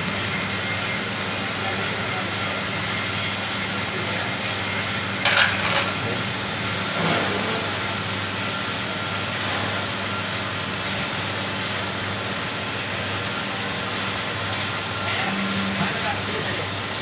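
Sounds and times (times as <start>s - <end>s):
short clatter: 5.2s - 6.2s.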